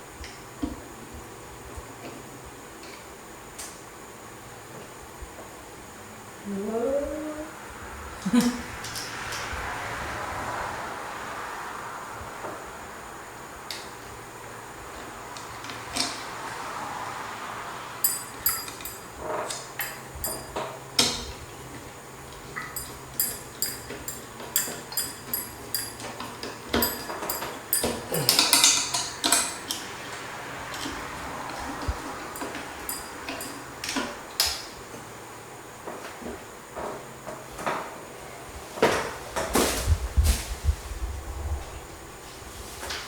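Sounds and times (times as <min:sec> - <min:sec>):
metal parts knocking together: 0:22.8 - 0:29.8.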